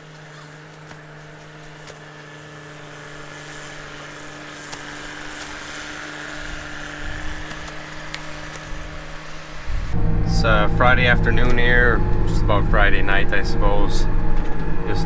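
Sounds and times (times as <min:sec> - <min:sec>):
high-pitched machine whine: 0:00.0 - 0:15.0
machine humming: 0:00.0 - 0:15.0
low rumbling: 0:09.6 - 0:15.0.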